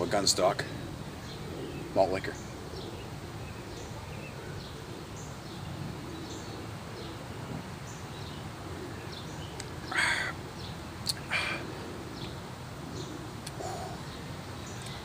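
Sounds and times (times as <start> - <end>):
harsh bird calls: 0.0 - 15.0
low background noise: 0.0 - 15.0
small birds chirping: 0.0 - 15.0.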